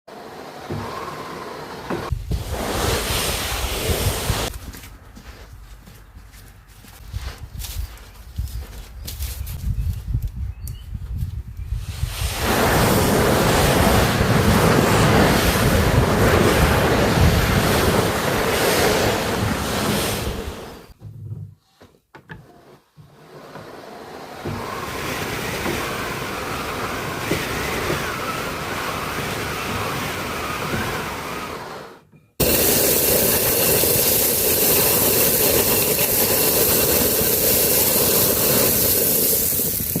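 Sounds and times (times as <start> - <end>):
loud rushing hiss: 0.1 - 4.5, 11.8 - 20.9, 24.3 - 40.0
loud rushing noise: 12.0 - 20.9.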